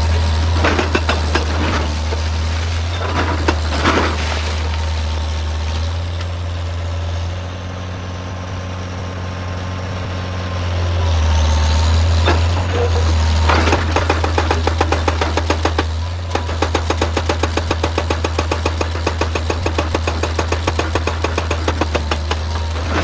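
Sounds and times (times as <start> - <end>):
excavator diesel engine running: 0.0 - 23.0
fast regular knocking clatter: 13.7 - 23.0.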